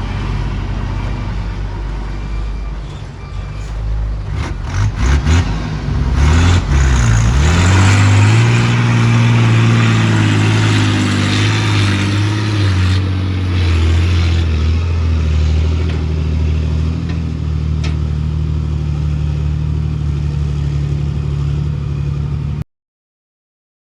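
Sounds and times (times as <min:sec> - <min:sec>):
engine running under load: 0:00.0 - 0:22.6.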